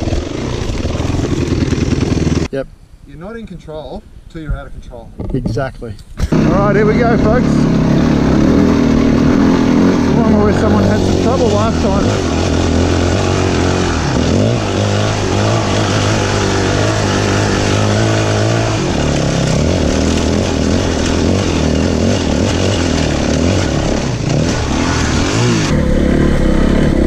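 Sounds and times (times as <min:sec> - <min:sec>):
dirt bike engine revving: 0:00.0 - 0:02.5, 0:06.2 - 0:27.0
steady rushing noise: 0:06.3 - 0:27.0.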